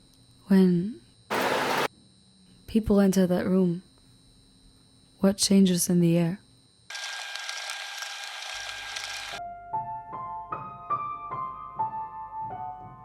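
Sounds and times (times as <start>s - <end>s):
dense hissy noise: 1.3s - 1.9s
slow piano melody: 9.4s - 13.0s.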